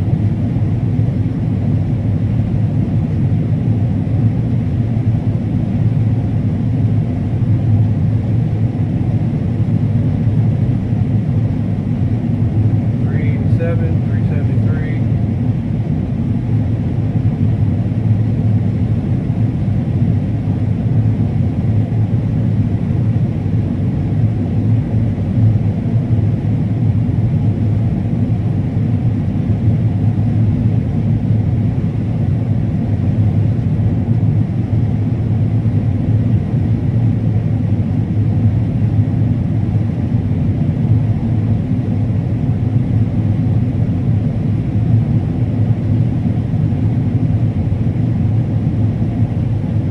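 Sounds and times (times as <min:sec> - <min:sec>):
combine harvester running: 0:13.0 - 0:15.2.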